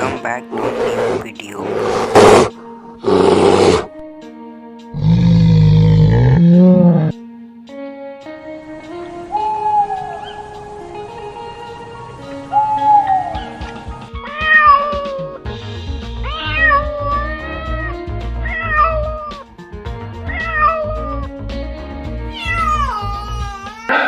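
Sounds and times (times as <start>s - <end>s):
background music: 0.0s - 24.0s
cat meowing: 14.2s - 15.4s, 16.2s - 19.4s, 20.3s - 21.2s, 22.3s - 24.0s.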